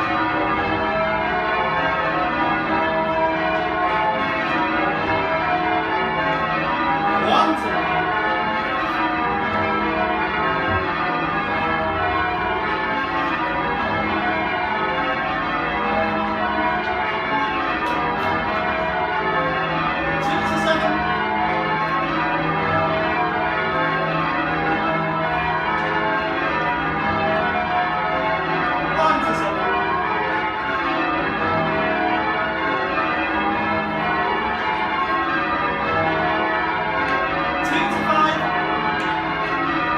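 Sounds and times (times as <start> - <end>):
church bells ringing: 0.0 - 39.9.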